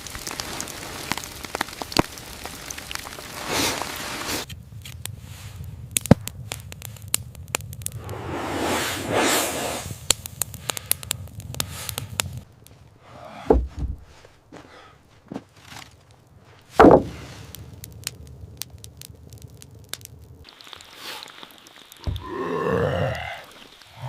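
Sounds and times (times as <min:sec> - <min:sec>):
wood fire crackling: 0:00.0 - 0:24.0
heavy thuds: 0:13.1 - 0:15.6, 0:16.7 - 0:17.4.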